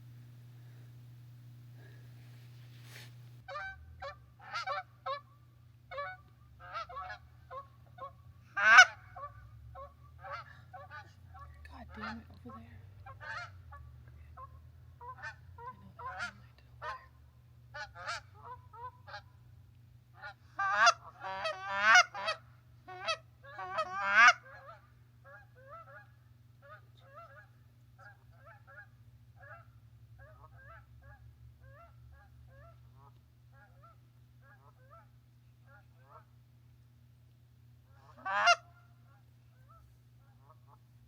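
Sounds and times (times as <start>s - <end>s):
geese honking: 5.9s - 11.0s, 20.2s - 35.1s, 38.0s - 38.7s.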